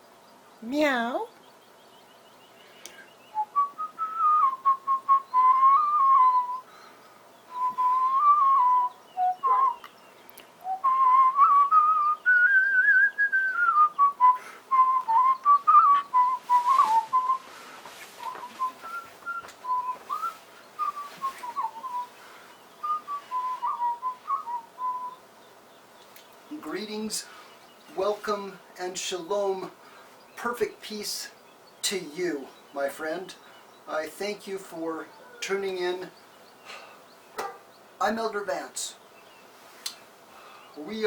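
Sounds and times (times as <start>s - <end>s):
person whistling a tune: 3.4s - 6.6s, 7.5s - 9.9s, 10.6s - 17.5s, 18.2s - 22.1s, 22.8s - 25.2s.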